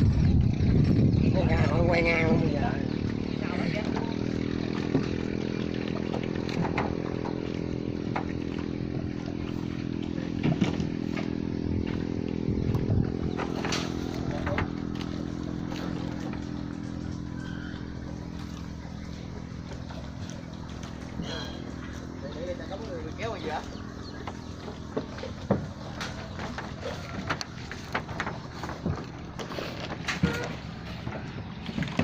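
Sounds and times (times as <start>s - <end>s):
small boat engine running: 0.0s - 32.0s
knocks and clatters: 6.1s - 8.4s, 24.2s - 32.0s.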